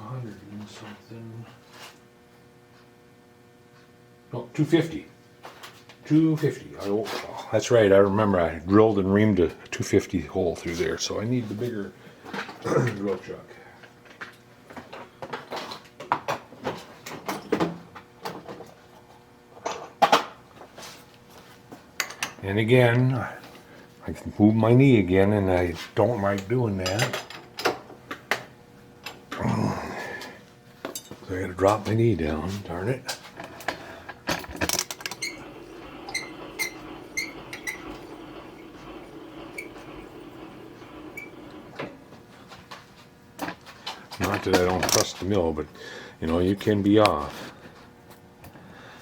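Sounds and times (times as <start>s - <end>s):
milling machine hum: 31.6s - 43.0s
metal tooling clunks and clicks: 33.1s - 42.0s.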